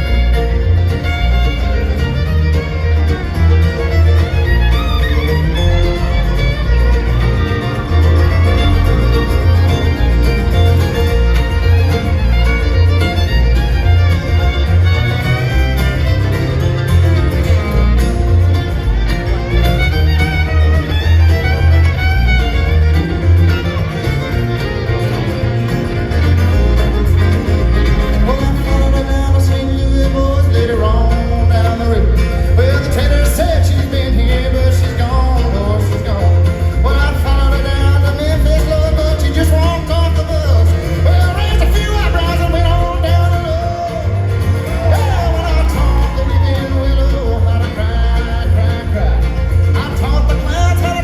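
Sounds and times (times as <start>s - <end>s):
bluegrass band playing: 0.0s - 51.0s
fiddle: 0.0s - 51.0s
pulsing bass: 0.0s - 51.0s.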